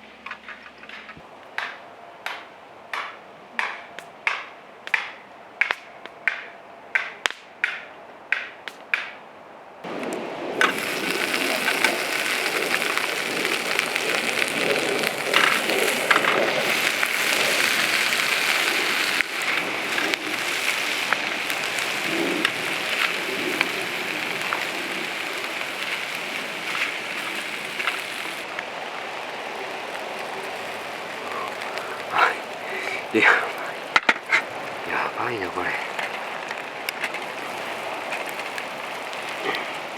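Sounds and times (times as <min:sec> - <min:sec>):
food sizzling in hot oil: 0:10.6 - 0:28.5
oil popping: 0:10.6 - 0:28.6, 0:29.9 - 0:35.1.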